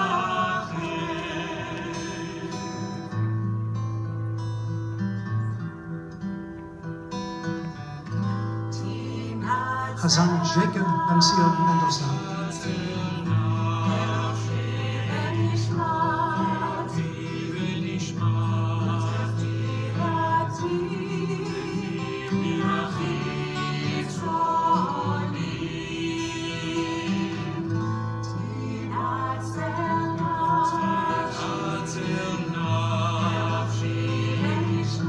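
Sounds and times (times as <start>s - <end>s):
voices singing together: 0.0s - 3.6s, 8.5s - 35.0s.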